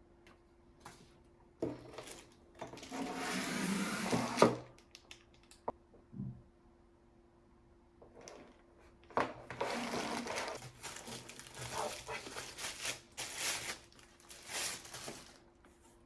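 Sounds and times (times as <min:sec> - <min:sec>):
packaging scraping and rustling: 0:01.8 - 0:04.5, 0:09.4 - 0:15.6
faint steady hum: 0:04.3 - 0:16.0.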